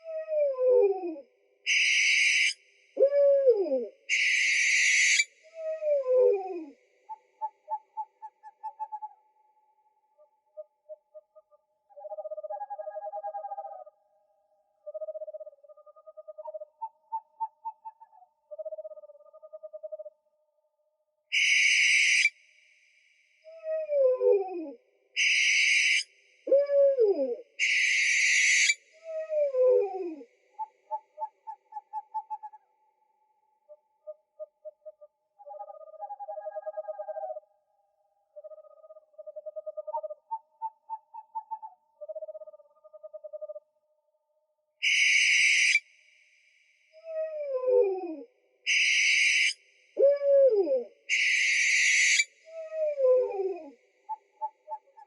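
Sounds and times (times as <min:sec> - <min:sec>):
owl trilled hooting: 0:00.0 - 0:09.2, 0:10.2 - 0:14.0, 0:14.8 - 0:20.1, 0:21.3 - 0:22.4, 0:23.5 - 0:32.7, 0:33.7 - 0:37.5, 0:38.4 - 0:43.6, 0:44.8 - 0:45.8, 0:47.0 - 0:55.0
owl calling: 0:01.7 - 0:06.7, 0:21.3 - 0:22.3, 0:25.2 - 0:32.6, 0:44.8 - 0:45.8, 0:47.0 - 0:55.0.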